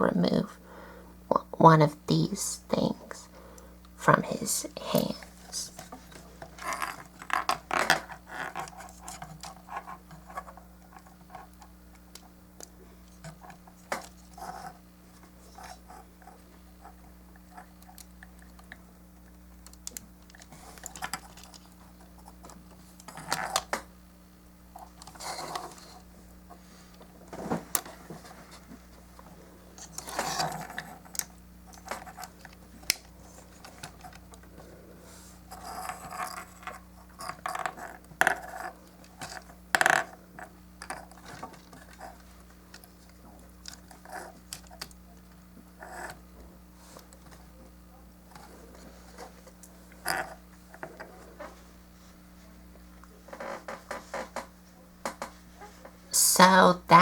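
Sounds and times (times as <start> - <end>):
faint steady hum: 0.0 - 57.0
plastic parts clicking and tapping: 17.8 - 21.8.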